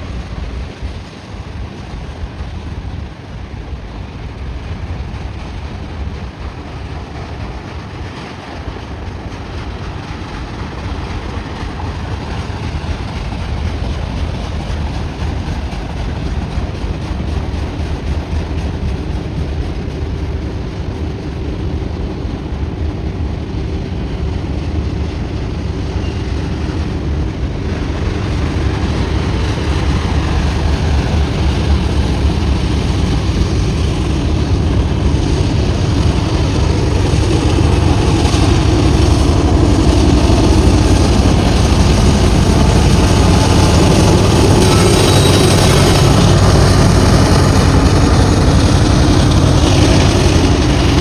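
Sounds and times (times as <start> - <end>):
diesel locomotive engine drone: 0.0 - 51.0
freight train rumbling past: 0.0 - 51.0.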